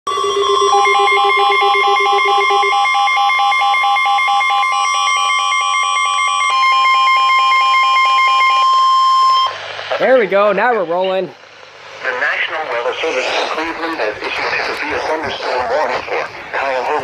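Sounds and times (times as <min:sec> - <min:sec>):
steady warning alarm tone: 0:00.1 - 0:09.8
rapid electronic beeping: 0:00.1 - 0:11.2, 0:12.0 - 0:17.0.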